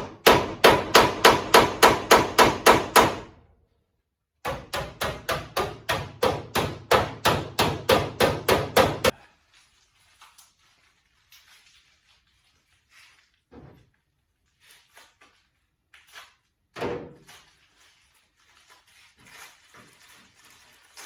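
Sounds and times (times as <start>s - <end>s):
hammer striking sheet metal: 0.0s - 3.3s, 4.5s - 9.1s.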